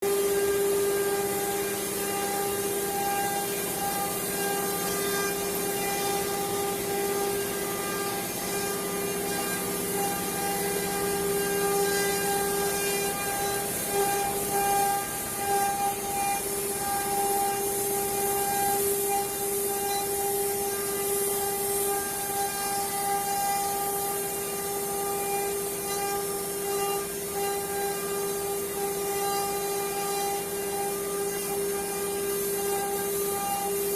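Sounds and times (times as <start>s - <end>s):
cutter hissing through material: 0.0s - 33.9s
router spindle high whine: 0.0s - 33.9s.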